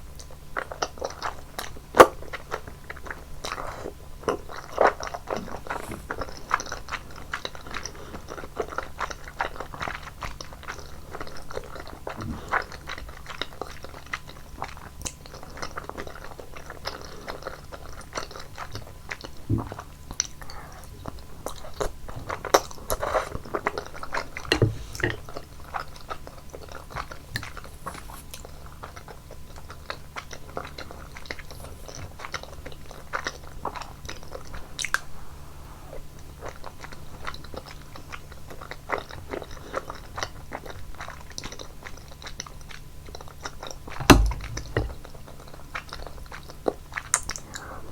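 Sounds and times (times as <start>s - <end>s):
wet mouth chewing clicks: 21.1s - 35.1s, 36.2s - 47.7s.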